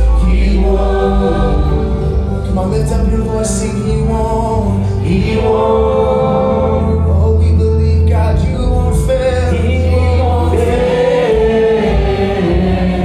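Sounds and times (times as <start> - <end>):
voices singing together: 0.0 - 3.2, 4.9 - 7.2, 9.8 - 13.0
band with strong bass: 0.0 - 13.0.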